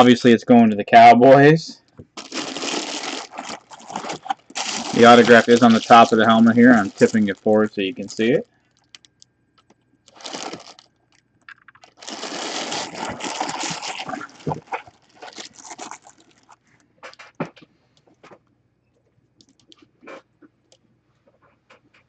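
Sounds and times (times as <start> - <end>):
packaging rustling and crinkling: 2.2 - 9.1, 10.1 - 11.0, 11.6 - 17.2.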